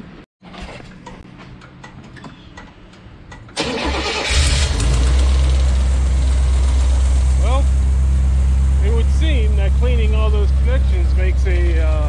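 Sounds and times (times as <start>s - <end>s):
car starter cranking: 3.6s - 5.4s
car engine deep idle: 5.5s - 12.0s.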